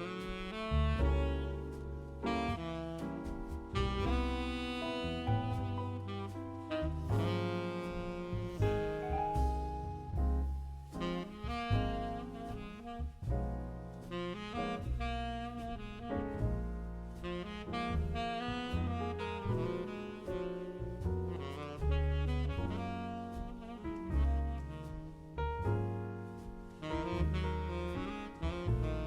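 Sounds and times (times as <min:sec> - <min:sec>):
saxophone lead: 0:00.0 - 0:10.2, 0:10.9 - 0:26.2, 0:26.8 - 0:29.0
steady beat: 0:00.0 - 0:25.1
double bass: 0:00.0 - 0:29.0
jazz music: 0:00.0 - 0:29.0
piano: 0:00.0 - 0:29.0.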